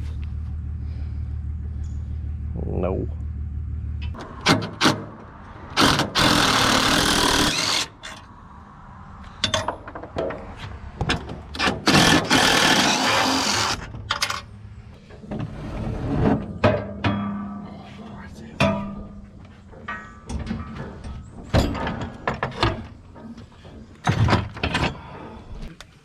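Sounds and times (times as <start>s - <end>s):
handheld power tool running: 5.8s - 7.9s, 11.9s - 13.8s.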